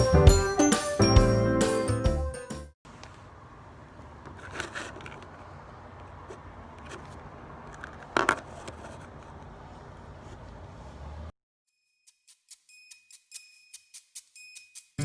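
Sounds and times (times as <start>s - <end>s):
music: 0.0s - 2.8s
scraping and rustling handling: 2.9s - 11.0s.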